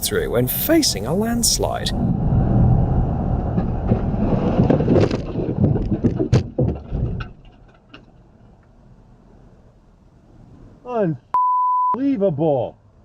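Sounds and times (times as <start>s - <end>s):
rockfall rumble with tumbling rocks: 1.3s - 10.0s.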